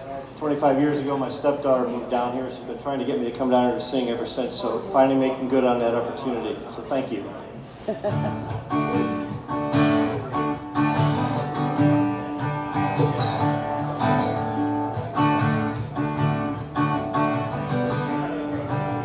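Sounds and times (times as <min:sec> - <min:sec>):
acoustic guitar strumming: 0:08.0 - 0:19.0.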